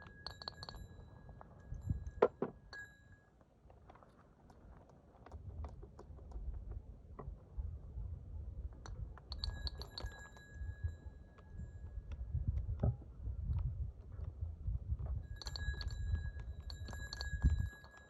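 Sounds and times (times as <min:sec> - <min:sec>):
metal tool ringing: 0:00.0 - 0:03.3.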